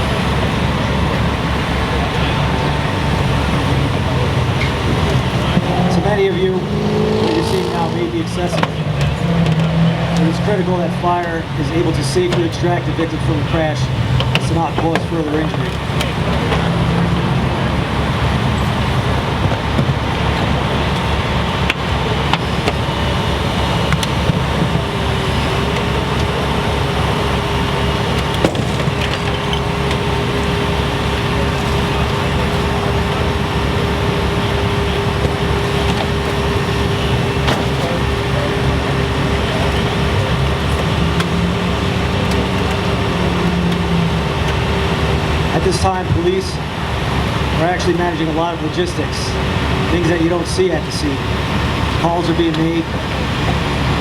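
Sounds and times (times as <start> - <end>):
steady hum: 0.0 - 54.0
vehicle engines running: 0.0 - 54.0.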